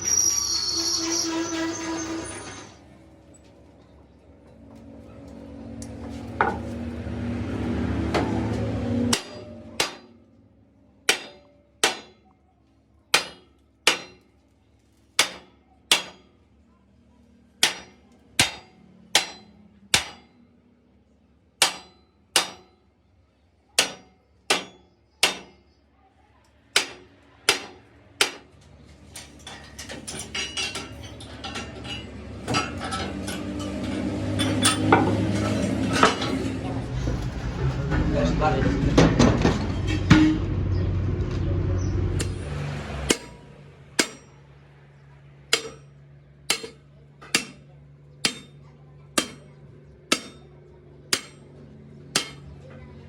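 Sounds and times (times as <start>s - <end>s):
hammer striking steel: 8.1s - 10.2s, 11.1s - 12.3s, 13.1s - 14.3s, 15.2s - 16.4s, 17.6s - 20.4s, 21.6s - 22.9s, 23.8s - 25.6s, 26.7s - 28.6s, 31.8s - 36.5s, 42.2s - 52.7s.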